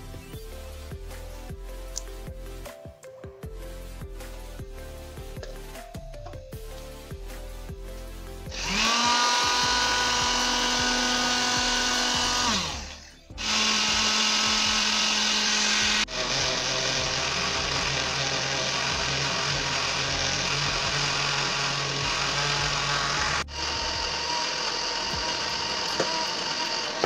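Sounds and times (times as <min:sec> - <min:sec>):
blender motor whine: 0:08.5 - 0:27.0.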